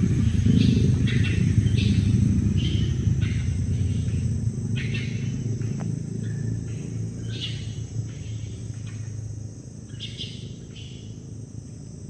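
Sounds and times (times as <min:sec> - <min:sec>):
low rumble: 0:00.0 - 0:08.6
high insect drone: 0:00.0 - 0:12.0.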